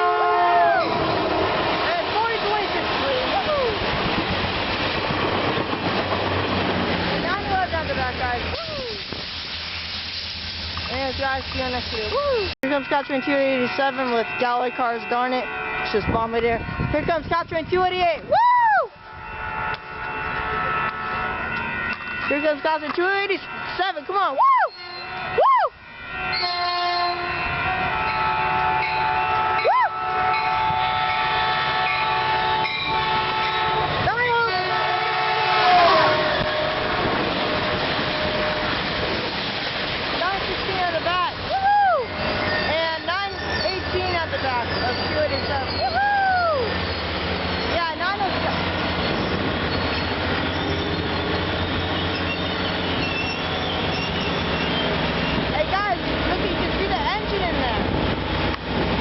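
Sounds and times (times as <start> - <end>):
locomotive horn chord: 0.0 - 3.0, 12.6 - 17.2, 19.0 - 39.0
train rumble: 0.0 - 59.0
person shouting woo: 0.4 - 0.9, 8.6 - 9.0, 12.1 - 12.5, 18.3 - 19.0, 24.4 - 24.8, 25.4 - 25.8, 29.6 - 30.0, 41.5 - 42.1, 45.8 - 46.7
high wheel squeal: 24.3 - 27.4, 41.6 - 55.9.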